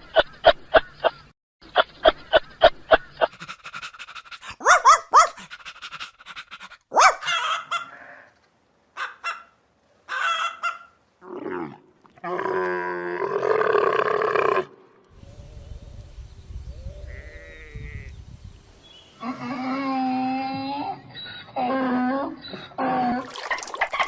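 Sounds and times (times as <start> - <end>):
dog barking: 4.5 - 5.5, 6.9 - 7.7.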